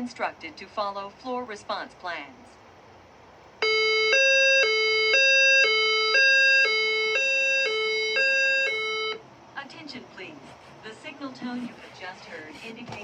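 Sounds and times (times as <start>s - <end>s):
hi-lo fire alarm tone: 3.6s - 9.2s.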